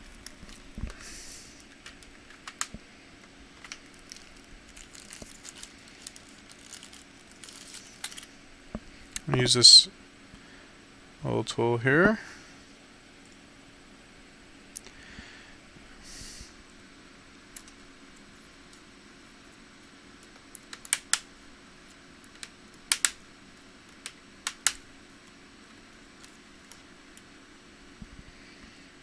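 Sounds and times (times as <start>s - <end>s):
plastic clips snapping: 1.8s - 2.8s.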